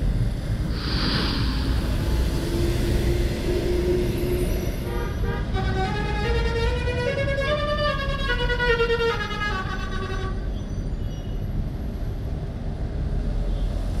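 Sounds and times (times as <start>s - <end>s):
low vehicle rumble: 0.0s - 10.6s
bus musical horn tune: 4.8s - 10.6s.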